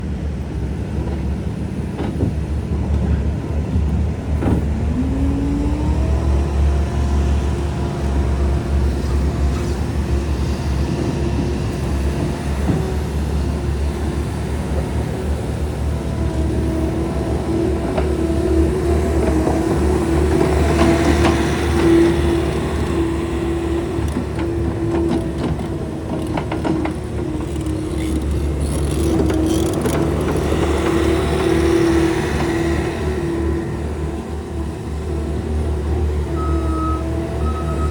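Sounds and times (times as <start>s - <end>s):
diesel engine running: 0.0s - 37.9s
rising whine: 4.6s - 7.7s.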